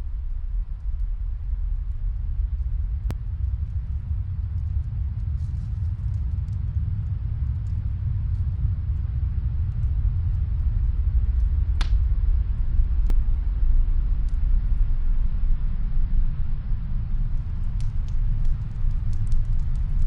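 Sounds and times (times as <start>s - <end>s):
snowstorm wind rumbling: 0.0s - 20.0s
wood fire crackling: 0.1s - 15.6s, 17.0s - 20.0s
sharp fire pops: 11.7s - 12.2s.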